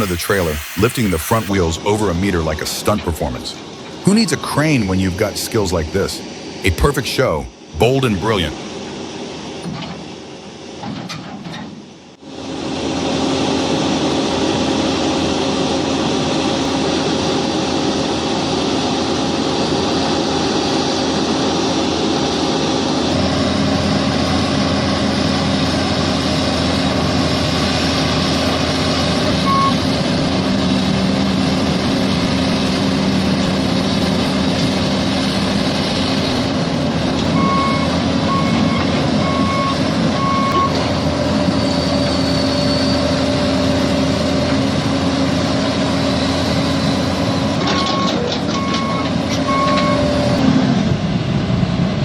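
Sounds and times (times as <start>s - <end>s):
heavy machinery diesel engine: 0.0s - 52.0s
electronic warning beeps: 29.4s - 29.8s, 37.3s - 40.8s.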